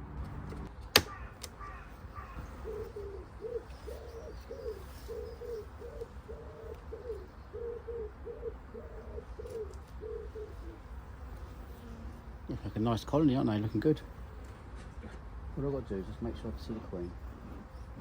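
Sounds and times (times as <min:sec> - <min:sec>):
pigeon cooing: 0:01.1 - 0:11.0.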